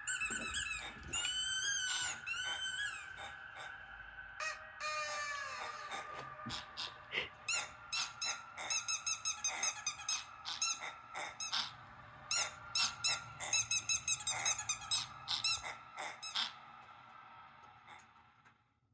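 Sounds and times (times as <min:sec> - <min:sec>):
high-pitched squeaks: 0:00.0 - 0:03.8, 0:04.4 - 0:16.7.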